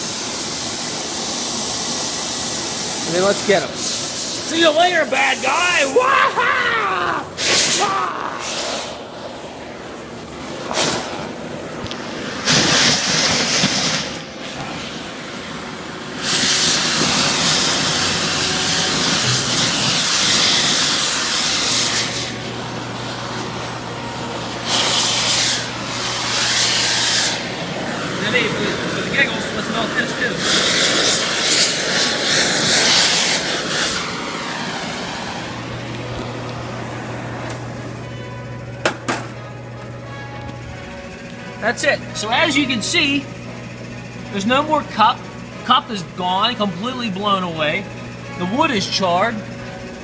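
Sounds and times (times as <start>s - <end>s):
torch flame hissing: 0.0s - 37.8s
low steady hum: 33.4s - 50.0s.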